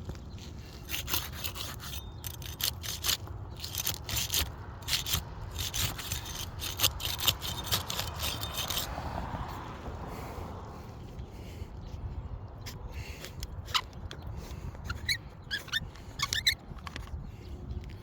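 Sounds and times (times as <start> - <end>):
trowel scraping roof shingles: 0.0 - 9.4, 13.0 - 17.1
shingles ripping: 0.4 - 9.0.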